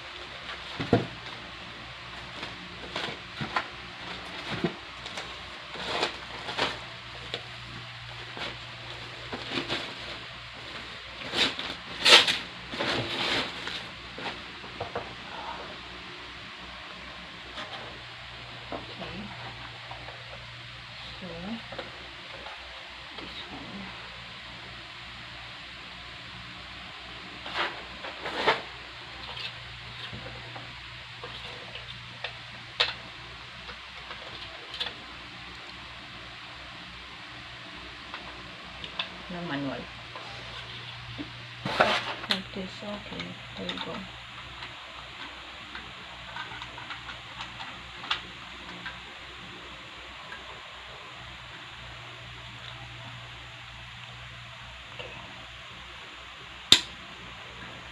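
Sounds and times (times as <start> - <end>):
packaging rustling and scraping: 2.1 - 7.5, 8.1 - 15.2, 27.4 - 30.6, 40.2 - 42.5.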